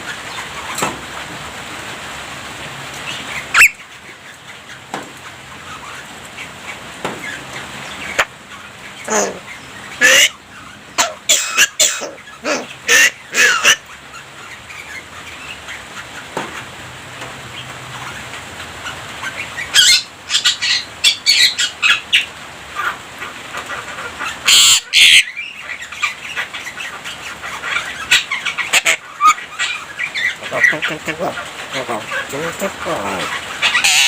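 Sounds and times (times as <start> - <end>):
myna squawking and chattering: 3.1 - 3.8, 7.3 - 16.2, 22.8 - 34.0.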